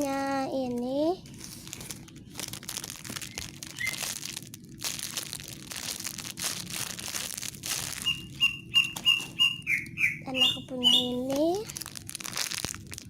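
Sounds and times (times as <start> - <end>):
plastic wrapping crinkling: 0.0 - 13.0
bird chirping: 3.7 - 4.0, 8.0 - 11.4.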